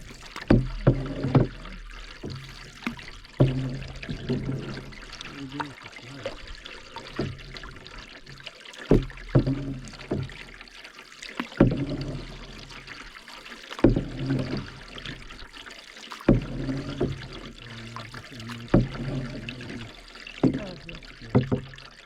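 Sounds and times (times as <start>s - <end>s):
paddle strokes knocking and splashing: 0.0s - 22.0s
water trickling and dripping: 0.0s - 22.0s.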